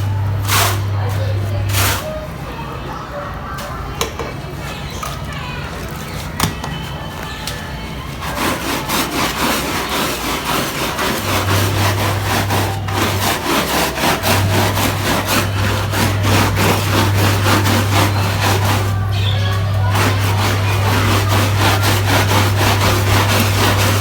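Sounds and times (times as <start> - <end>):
steady low hum: 7.8 - 24.0
brush scrubbing wet carpet: 8.1 - 24.0.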